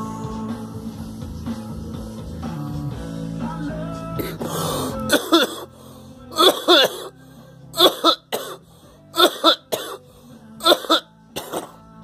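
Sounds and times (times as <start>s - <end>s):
person coughing: 5.1s - 5.7s, 6.4s - 7.1s, 7.8s - 8.6s, 9.2s - 10.0s, 10.6s - 11.8s.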